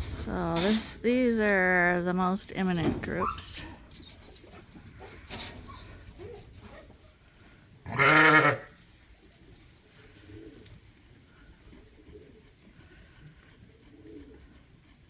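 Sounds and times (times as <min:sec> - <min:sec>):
faint barn background noise: 0:00.0 - 0:15.0
sheep bleating: 0:07.9 - 0:08.7.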